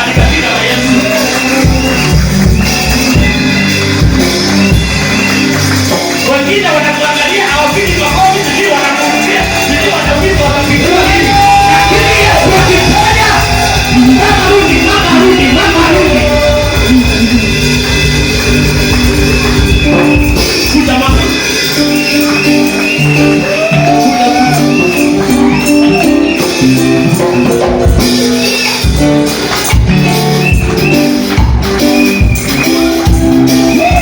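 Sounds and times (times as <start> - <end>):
praise music with steady beat: 0.0 - 34.0.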